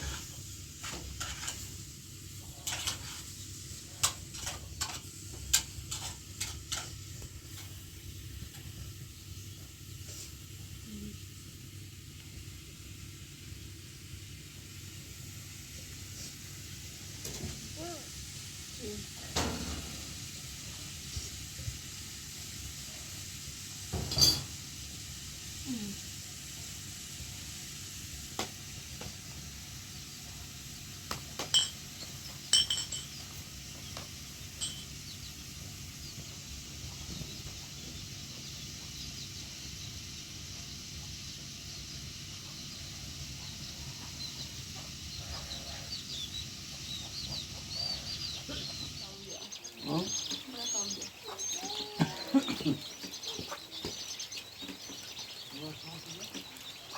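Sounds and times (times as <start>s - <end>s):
steady low hiss: 0.0s - 56.9s
sharp metallic clinks: 31.5s - 33.3s, 34.5s - 35.0s.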